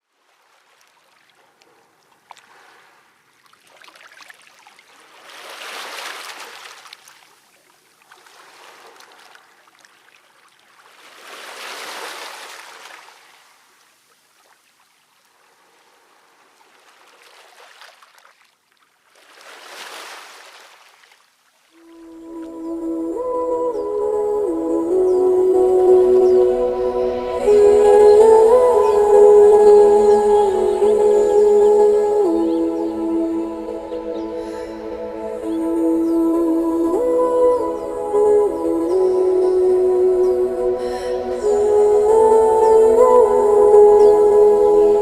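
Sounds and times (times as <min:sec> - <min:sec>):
waves washing in: 0:05.0 - 0:07.1, 0:10.8 - 0:13.6, 0:21.7 - 0:45.0.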